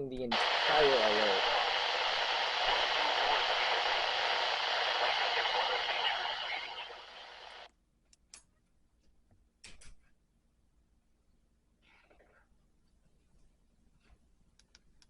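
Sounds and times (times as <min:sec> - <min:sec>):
radio static hiss: 0:00.3 - 0:07.7.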